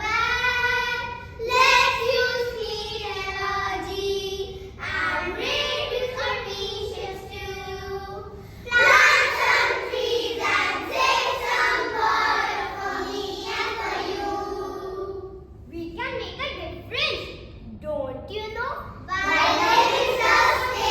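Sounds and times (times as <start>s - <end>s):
children singing: 0.0s - 8.0s, 8.7s - 15.4s, 19.1s - 20.9s.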